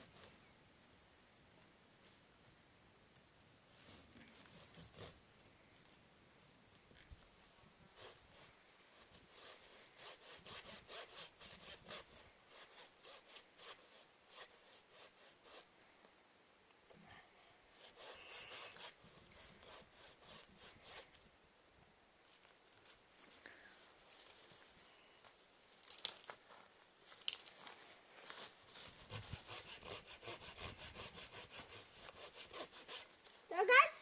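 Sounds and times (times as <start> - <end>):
hand saw cutting wood: 8.0 - 15.7, 17.8 - 21.1, 28.8 - 33.3.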